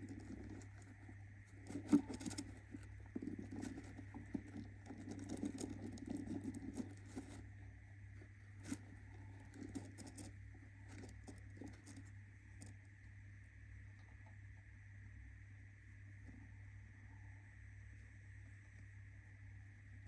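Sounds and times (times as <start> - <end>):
bird scratching and rustling: 0.0 - 12.9
electrical hum: 0.0 - 20.0.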